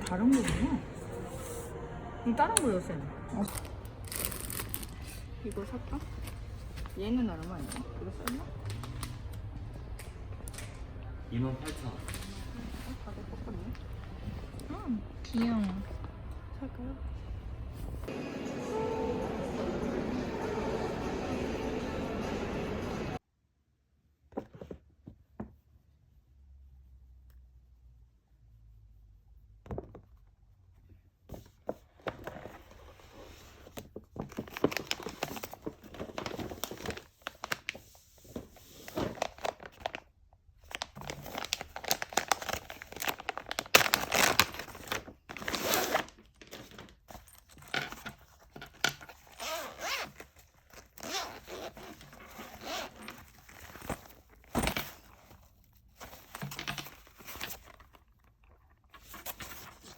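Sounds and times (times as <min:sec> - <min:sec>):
packaging tearing and crinkling: 0:40.7 - 0:46.9.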